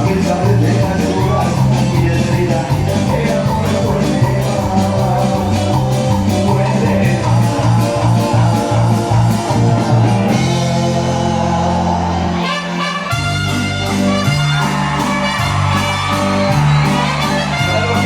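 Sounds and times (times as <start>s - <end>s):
live band playing: 0.0s - 18.0s
horns: 11.6s - 18.0s.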